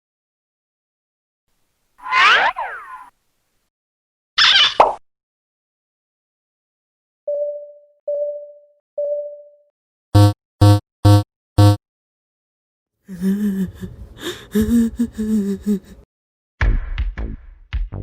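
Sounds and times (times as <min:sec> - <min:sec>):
cartoon beep: 0:02.0 - 0:03.1, 0:10.2 - 0:11.8
warbling tone: 0:02.0 - 0:03.1
loud buzzer-like blasts: 0:10.2 - 0:11.8.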